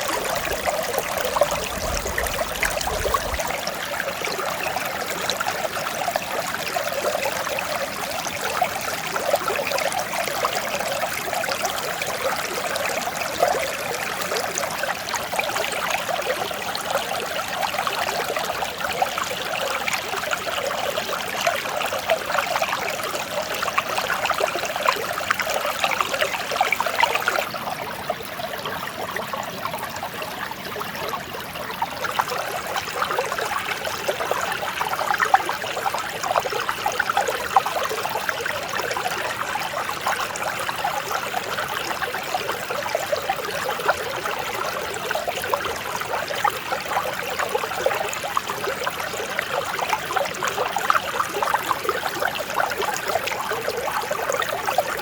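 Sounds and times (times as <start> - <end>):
mountain stream rushing: 0.0 - 4.2.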